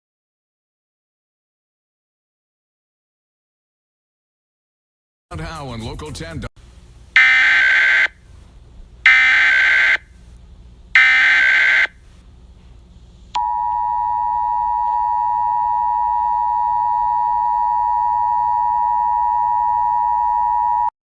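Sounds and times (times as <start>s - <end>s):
digital data screech: 7.2s - 8.1s, 11.0s - 11.9s
two-tone attention signal: 7.2s - 8.1s.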